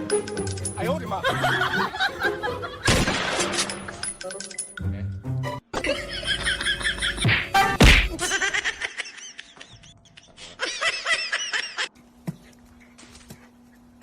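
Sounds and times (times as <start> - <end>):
person laughing: 1.2 - 2.9, 5.8 - 7.4, 8.1 - 11.9.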